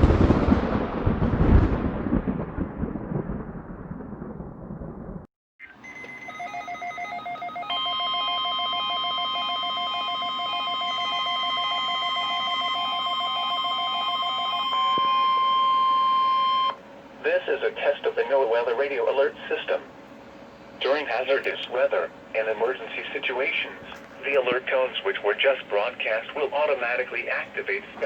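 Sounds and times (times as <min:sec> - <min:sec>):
loud rumbling crash: 0:00.0 - 0:05.3
rapid beeps: 0:05.6 - 0:13.8
high-pitched alarm tone: 0:05.6 - 0:16.8.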